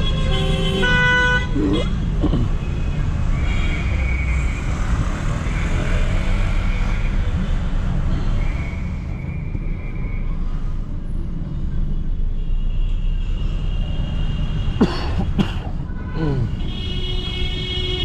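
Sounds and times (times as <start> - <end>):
car horns honking: 0.0 - 4.2, 14.6 - 18.0.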